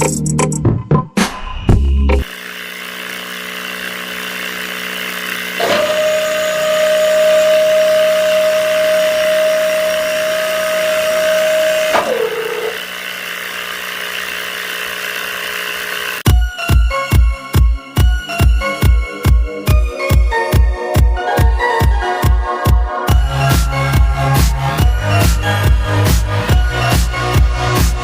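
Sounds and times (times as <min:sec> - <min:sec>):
small electric motor whirring: 0:02.2 - 0:16.2.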